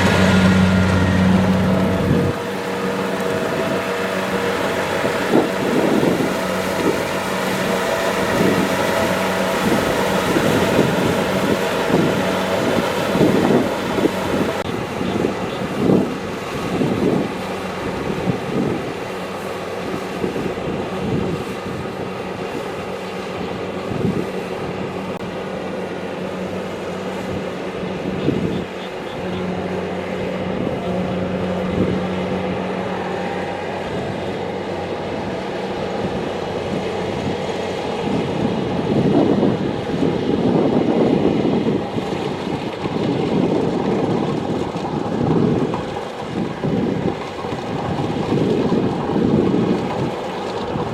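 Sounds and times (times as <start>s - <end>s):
combine harvester engine hum: 0.0s - 50.9s.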